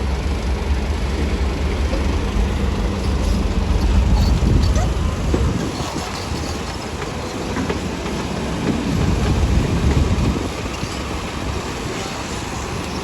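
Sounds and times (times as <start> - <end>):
diesel machinery engine rumble: 0.0 - 7.4.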